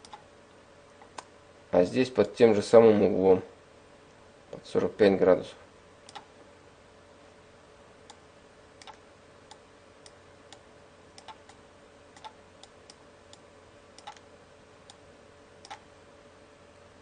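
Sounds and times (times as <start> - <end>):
computer mouse clicks: 0.0 - 0.2, 6.1 - 6.3, 8.8 - 10.6, 11.2 - 11.6, 12.2 - 13.4, 14.0 - 14.3, 15.6 - 15.8
low electrical hum: 0.0 - 17.0.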